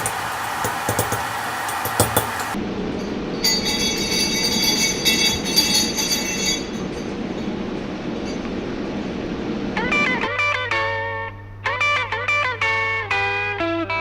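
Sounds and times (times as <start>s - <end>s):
sleigh bell ringing: 3.4s - 6.9s.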